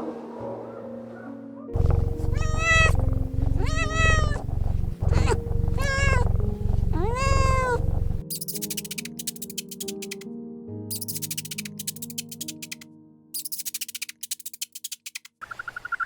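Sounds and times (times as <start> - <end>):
cat meowing: 1.8 - 8.2
low pulsing rumble: 1.8 - 8.2.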